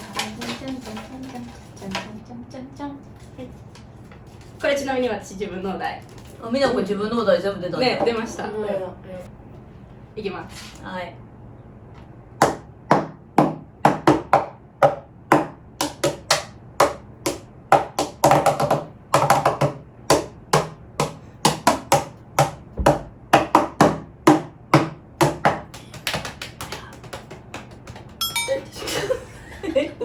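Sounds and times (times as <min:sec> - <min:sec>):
hands tapping on desk and body: 0:12.4 - 0:28.2.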